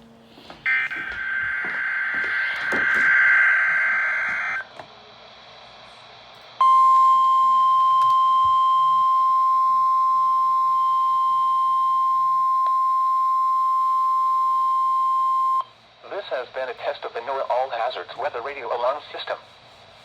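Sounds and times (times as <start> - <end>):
steady alarm tone: 0.6 - 4.6, 6.6 - 15.8
faint radio hiss: 3.4 - 6.6, 15.6 - 20.0.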